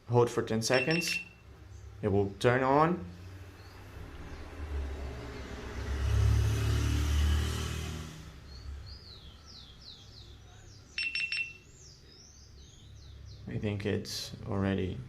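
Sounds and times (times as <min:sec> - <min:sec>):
vehicle passing by: 0:01.6 - 0:10.0.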